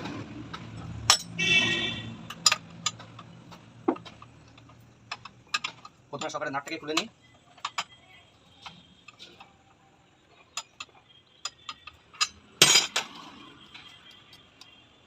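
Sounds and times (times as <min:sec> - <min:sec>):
metal tool clinks and clicks: 0:00.5 - 0:01.4, 0:02.3 - 0:09.6, 0:10.5 - 0:14.7
loud metal clank: 0:12.6 - 0:13.2.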